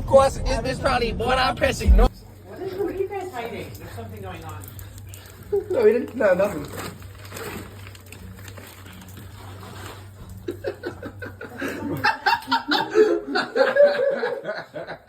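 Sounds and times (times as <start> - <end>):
low steady hum: 0.0 - 5.8
people chuckling and laughing: 10.2 - 15.0.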